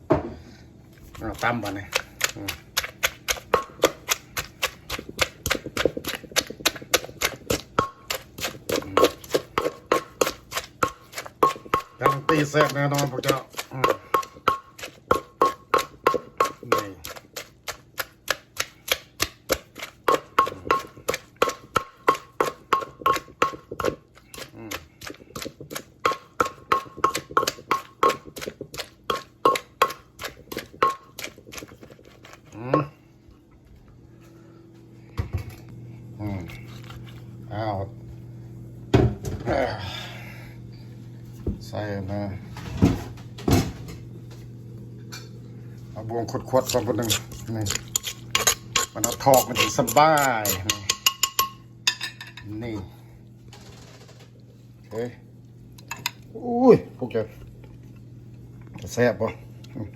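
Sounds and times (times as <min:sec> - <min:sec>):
pestle pounding in a mortar: 0:01.1 - 0:32.9, 0:46.3 - 0:51.6.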